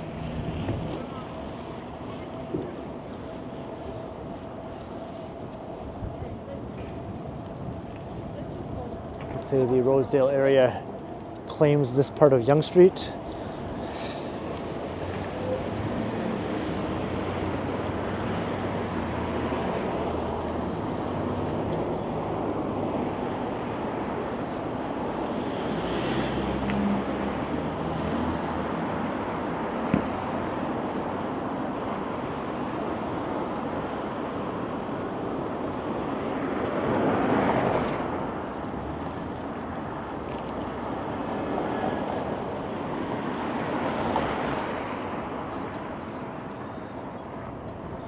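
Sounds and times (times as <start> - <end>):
street traffic: 0.0 - 48.0
wind buffeting microphone: 0.0 - 48.0.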